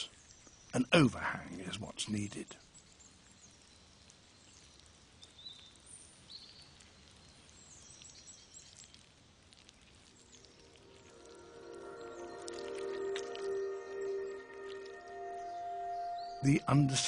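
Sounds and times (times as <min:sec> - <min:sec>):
faint bird chirps: 0:02.4 - 0:17.0
soft music: 0:10.3 - 0:17.0.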